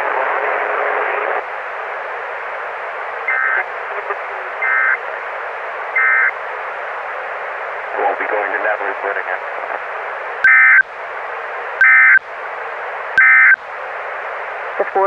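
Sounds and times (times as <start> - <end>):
radio static hiss: 0.0 - 15.0
digital data tone bursts: 3.3 - 3.6, 4.6 - 5.0, 6.0 - 6.3, 10.4 - 10.8, 11.8 - 12.2, 13.2 - 13.6.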